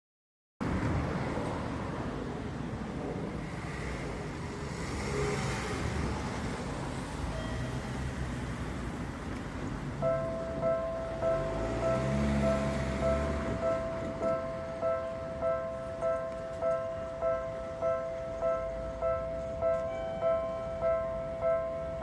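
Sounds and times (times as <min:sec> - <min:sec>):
street traffic noise: 0:00.6 - 0:22.0
level crossing warning bell: 0:07.2 - 0:08.0, 0:09.8 - 0:22.0.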